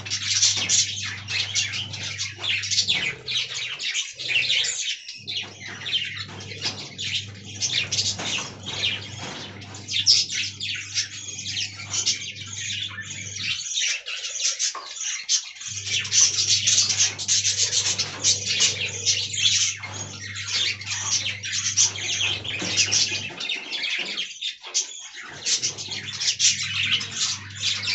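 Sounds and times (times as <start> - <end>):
budgerigars chattering and chirping: 0.0 - 27.9
low steady hum: 15.7 - 23.4.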